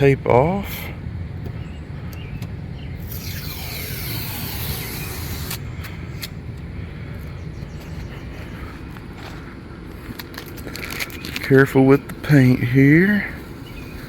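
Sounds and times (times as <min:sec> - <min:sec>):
steady low rumble: 0:00.0 - 0:14.0
tape tearing off: 0:03.0 - 0:06.4.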